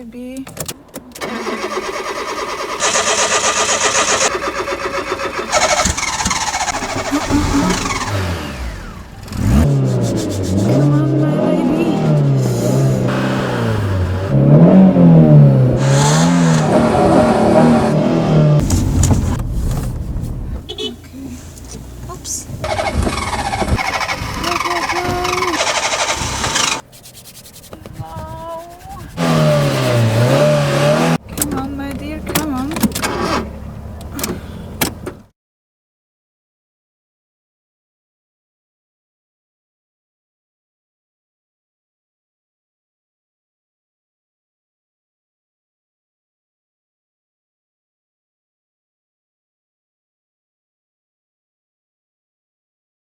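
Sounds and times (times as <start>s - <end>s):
starter cranking engine: 1.2s - 11.0s, 22.6s - 26.8s
car engine revving: 1.2s - 26.8s, 29.2s - 31.2s.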